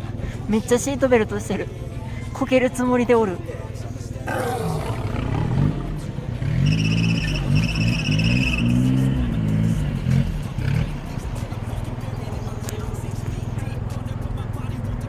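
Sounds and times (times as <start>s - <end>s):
off-road vehicle engine revving: 0.0s - 15.0s
high trilling whine: 4.6s - 10.2s.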